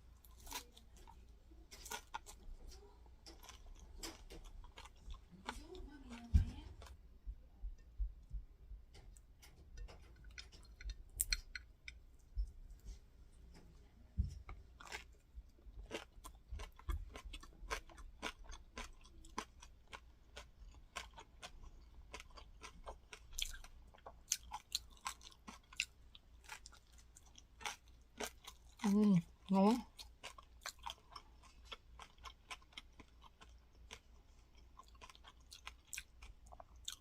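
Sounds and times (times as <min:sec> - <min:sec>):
chewing crunchy rice cake: 0:00.0 - 0:07.0, 0:14.7 - 0:37.0.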